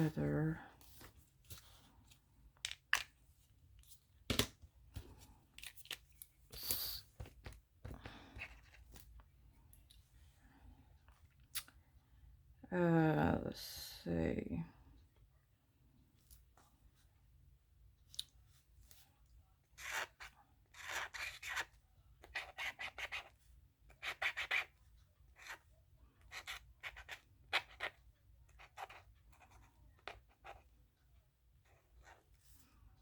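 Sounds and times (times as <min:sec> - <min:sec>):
marker scratching on paper: 0:19.8 - 0:30.7.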